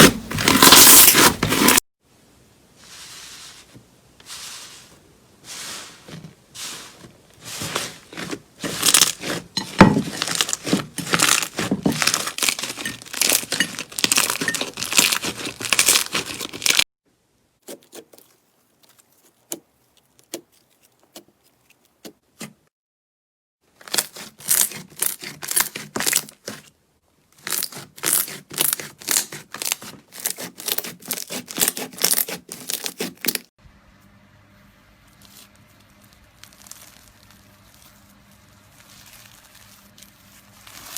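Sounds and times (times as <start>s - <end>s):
slime crackling and popping: 8.8s - 9.3s, 10.1s - 16.8s, 35.8s - 37.8s.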